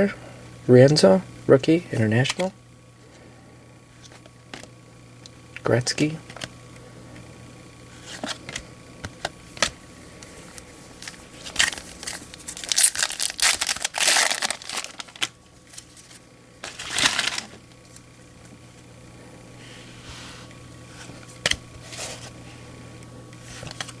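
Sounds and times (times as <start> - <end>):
foil wrapper crinkling and tearing: 11.0 - 18.0.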